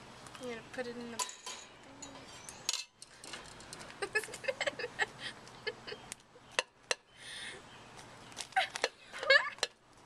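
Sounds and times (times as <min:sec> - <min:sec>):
utensils clinking against a bowl: 0:01.0 - 0:03.8.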